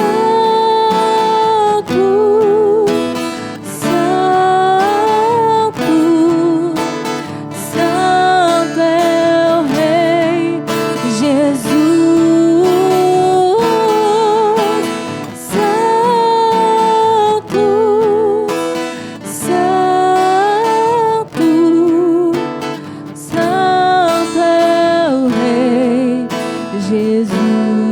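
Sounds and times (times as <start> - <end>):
acoustic guitar strumming: 0.0 - 27.9
person singing with vibrato: 0.0 - 27.9
singer breathing: 18.8 - 19.3.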